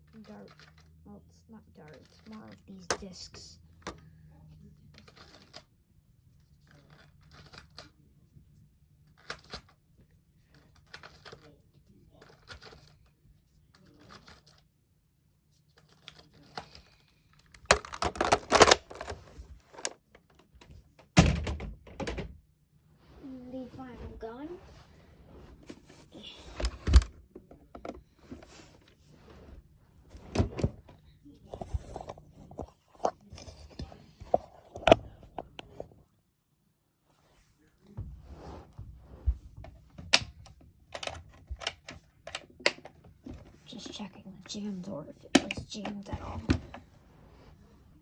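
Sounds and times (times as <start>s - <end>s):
hard plastic clacks and knocks: 17.5s - 22.4s, 26.6s - 28.6s.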